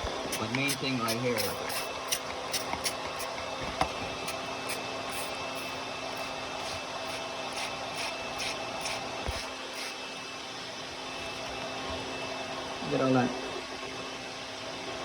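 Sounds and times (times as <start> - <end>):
electric air pump running: 0.0 - 15.0
spray bottle squirting: 0.3 - 10.0.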